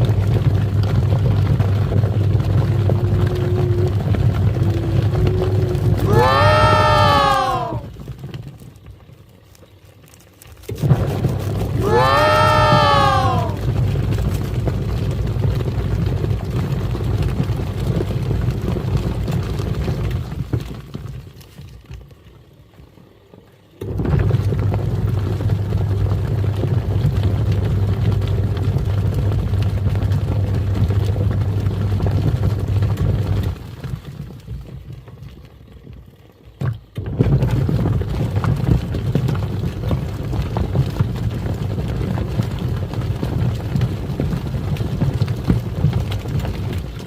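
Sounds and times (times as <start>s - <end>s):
washing machine motor hum: 0.0s - 7.9s, 10.9s - 13.9s, 23.8s - 33.6s
washing machine water churning: 0.0s - 7.9s, 10.6s - 20.5s, 23.8s - 34.9s, 36.6s - 47.0s.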